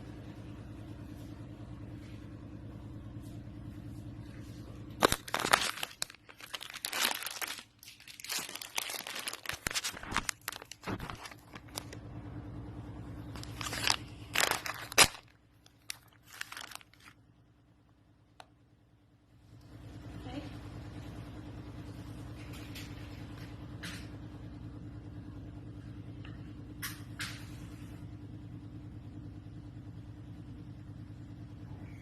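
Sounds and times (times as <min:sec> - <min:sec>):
low electrical hum: 0:00.0 - 0:32.0
crinkling: 0:04.5 - 0:12.0, 0:13.3 - 0:17.2.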